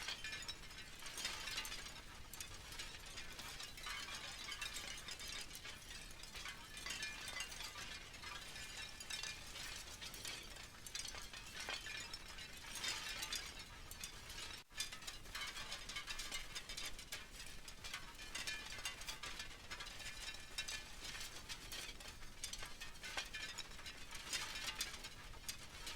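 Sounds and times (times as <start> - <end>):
wind chimes jangling: 0.0 - 14.6.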